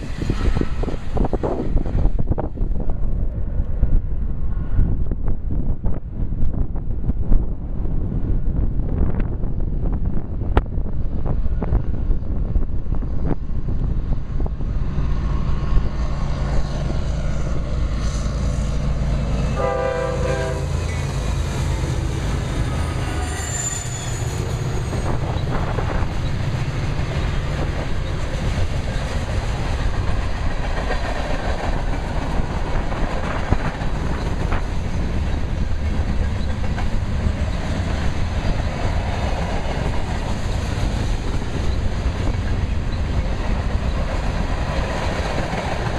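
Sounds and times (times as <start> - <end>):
wind buffeting microphone: 0.0 - 45.9
train horn blast: 19.4 - 24.2
train wheels clattering on rails: 20.7 - 45.9.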